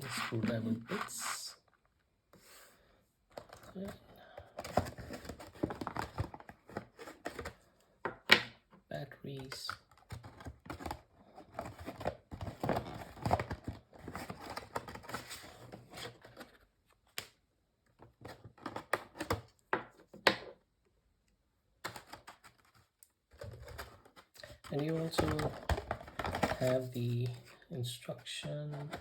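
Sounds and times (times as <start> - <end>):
plastic and paper rustling: 0.0 - 1.6, 3.3 - 7.6, 9.4 - 16.6, 21.8 - 29.0.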